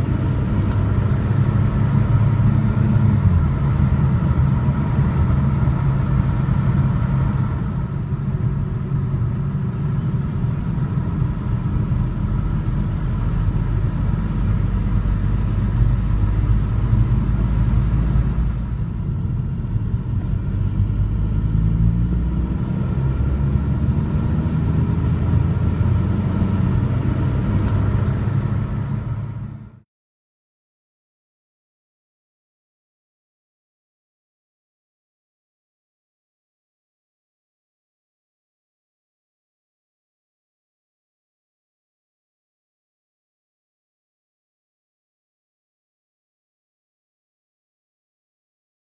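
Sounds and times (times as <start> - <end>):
engine running with low rumble: 0.0 - 29.8.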